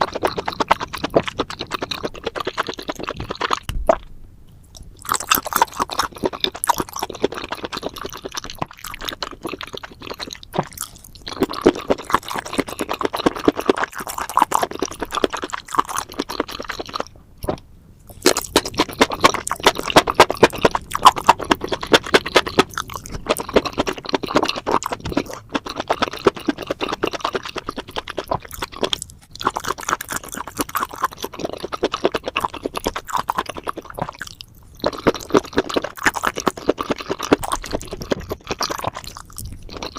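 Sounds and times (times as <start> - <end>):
wet chewing and mouth smacking: 0.0 - 4.1, 4.7 - 39.9.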